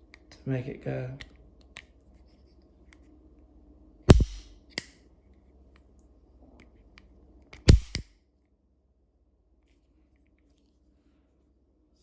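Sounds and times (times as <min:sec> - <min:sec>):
lighter click: 0:04.1 - 0:05.0, 0:07.6 - 0:08.0
pistol hammer metallic snaps: 0:04.1 - 0:05.0, 0:07.6 - 0:08.1.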